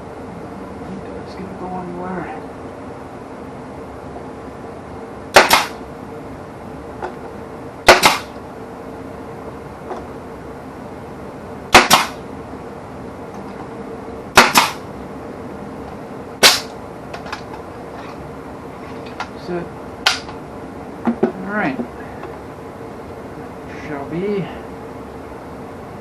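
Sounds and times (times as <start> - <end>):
brad nailer shots: 5.3 - 5.8, 7.8 - 8.4, 11.7 - 12.2, 14.3 - 14.8, 16.4 - 16.7.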